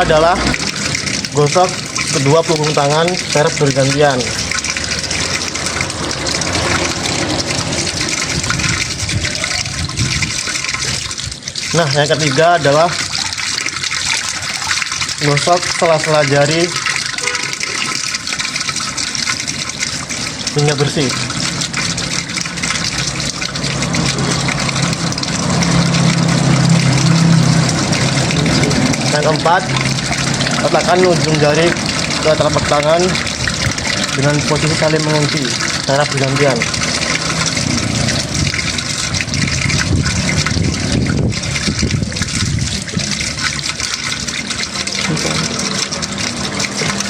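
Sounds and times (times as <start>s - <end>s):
tap water running and splashing: 0.0s - 47.0s.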